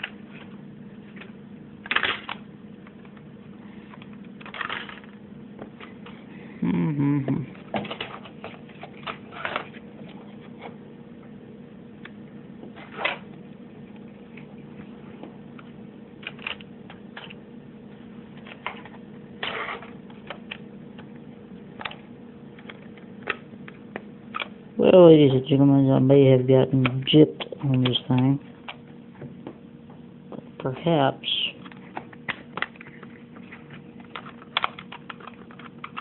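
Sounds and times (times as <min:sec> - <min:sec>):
faint steady hum: 0:00.0 - 0:36.0.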